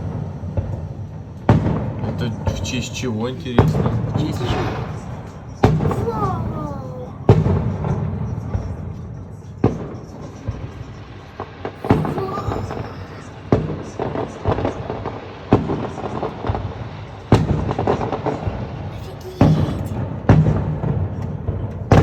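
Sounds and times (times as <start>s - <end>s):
firework shells bursting: 10.4s - 22.0s.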